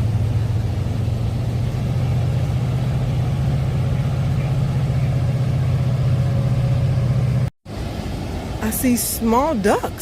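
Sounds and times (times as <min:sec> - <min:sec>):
passing road traffic: 0:00.0 - 0:10.0
trains passing: 0:00.0 - 0:10.0
water cascading down waterfalls: 0:07.7 - 0:10.0.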